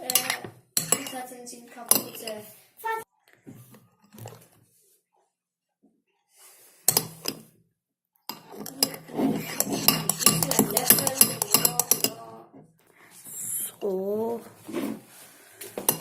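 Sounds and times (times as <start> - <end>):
spoon clinking against bowl: 8.3 - 12.2.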